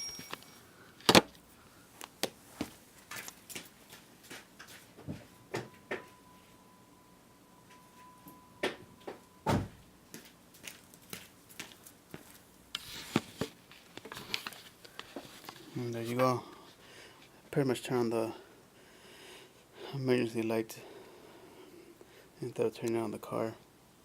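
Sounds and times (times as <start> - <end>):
faint steady tone: 0.0 - 1.9, 5.0 - 10.1.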